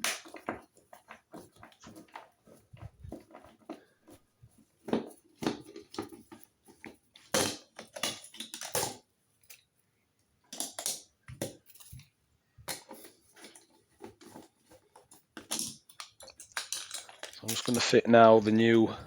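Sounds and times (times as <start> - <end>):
clicks and knocks of plastic: 0.0 - 9.6, 10.5 - 19.0
scraping of plastic and screws: 12.7 - 18.8.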